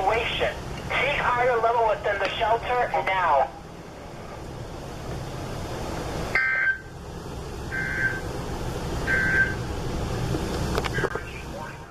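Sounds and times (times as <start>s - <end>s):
radio static and hum: 0.0s - 3.6s, 10.8s - 11.9s.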